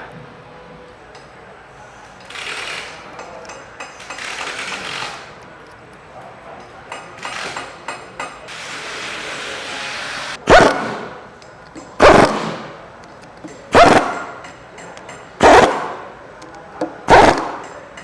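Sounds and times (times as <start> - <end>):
air impact wrench bursts: 3.9 - 5.4, 8.5 - 11.3, 12.0 - 12.9, 13.7 - 14.4, 15.4 - 16.1, 17.1 - 17.8.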